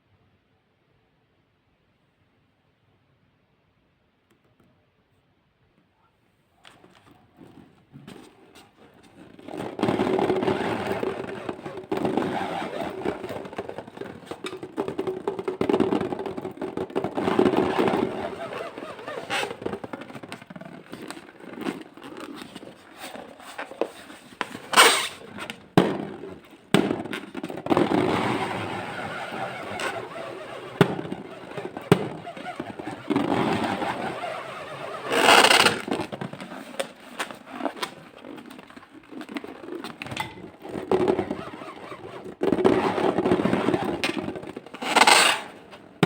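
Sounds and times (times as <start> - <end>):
balloons and slime squishing: 8.3 - 46.0.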